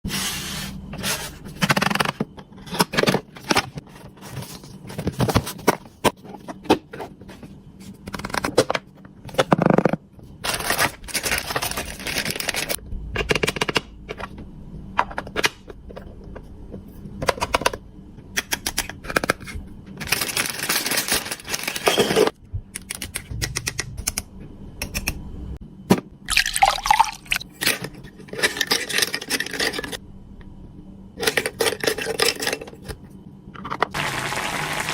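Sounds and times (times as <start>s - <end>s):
toy kitchen pieces clicking: 18.4s - 22.2s, 27.0s - 30.0s.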